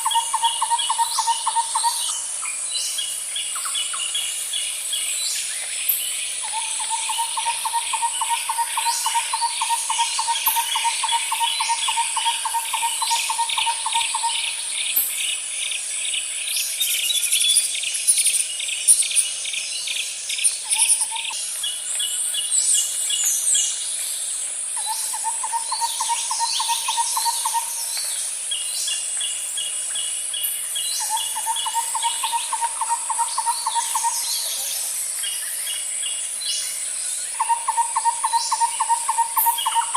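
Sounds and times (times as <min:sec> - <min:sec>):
high insect drone: 0:00.0 - 0:39.9
bird chirps and calls: 0:31.0 - 0:36.2, 0:37.3 - 0:39.9.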